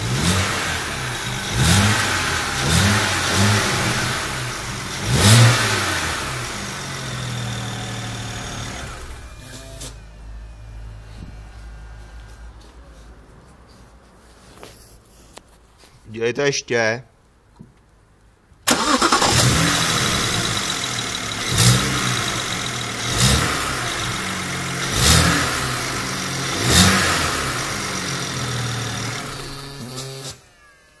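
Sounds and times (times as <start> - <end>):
car engine idling: 0.0 - 9.5, 18.7 - 29.8.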